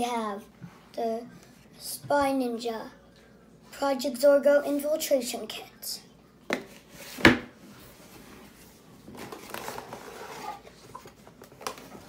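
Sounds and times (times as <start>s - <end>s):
packaging and paper rustling: 9.0s - 12.0s.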